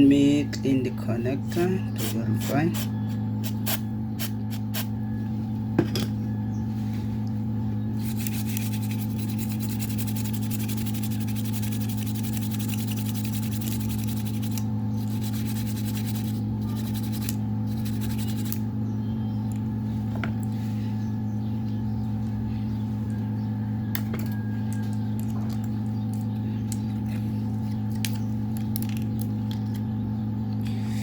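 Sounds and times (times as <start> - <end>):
low electrical hum: 0.0 - 31.0
scratchy rubbing: 8.0 - 18.6.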